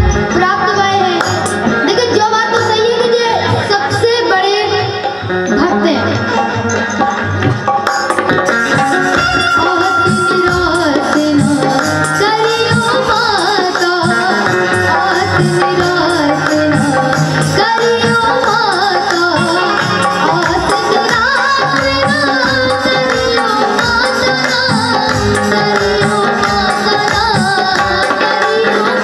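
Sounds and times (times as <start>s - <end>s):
hand drum beat: 6.2s - 29.0s.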